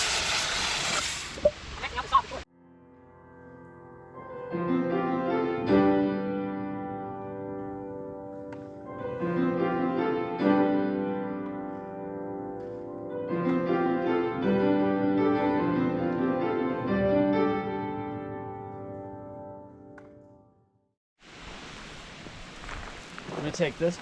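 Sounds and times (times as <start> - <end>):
piano background music: 2.5 - 20.7.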